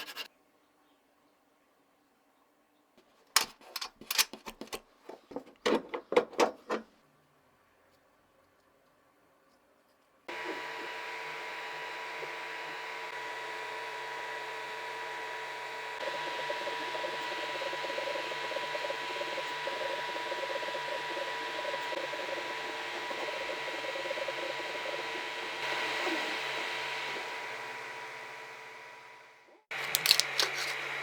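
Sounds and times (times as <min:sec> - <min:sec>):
power tool whining: 0:10.3 - 0:31.0.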